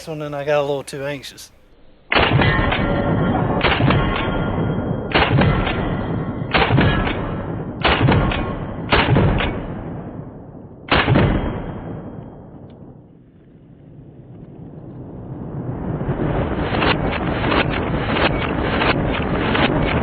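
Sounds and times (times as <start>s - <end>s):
shotgun shots: 2.1s - 12.7s, 16.6s - 20.0s.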